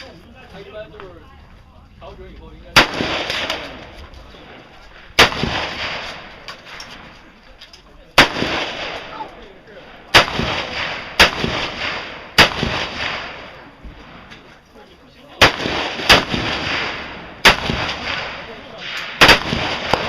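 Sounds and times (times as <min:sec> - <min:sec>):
gunshots with echo: 0:02.8 - 0:07.2, 0:08.2 - 0:14.3, 0:15.4 - 0:20.0.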